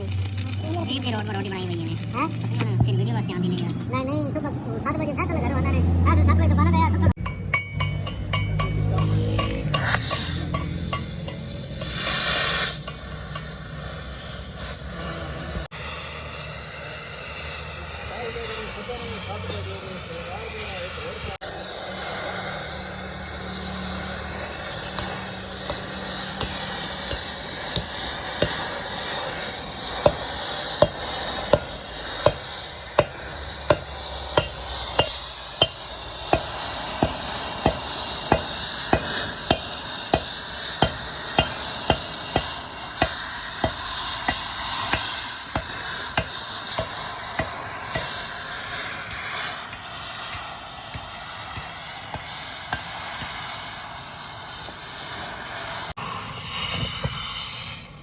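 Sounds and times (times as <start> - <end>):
workshop hiss: 0.0 - 2.9, 9.7 - 58.0
hammer striking metal: 7.2 - 13.7, 23.7 - 48.9, 49.5 - 53.4.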